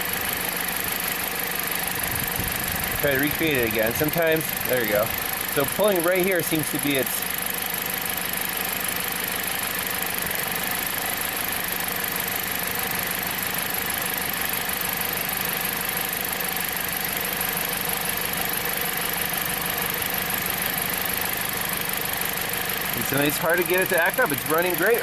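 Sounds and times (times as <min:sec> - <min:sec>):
car engine idling: 0:00.0 - 0:25.0.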